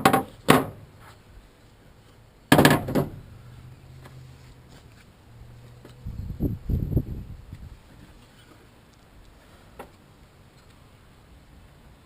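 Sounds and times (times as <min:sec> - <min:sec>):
sharp knock: 0:02.5 - 0:03.2.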